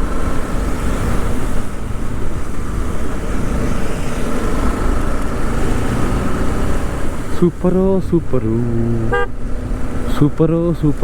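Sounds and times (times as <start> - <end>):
wind rushing over microphone: 0.0 - 7.3.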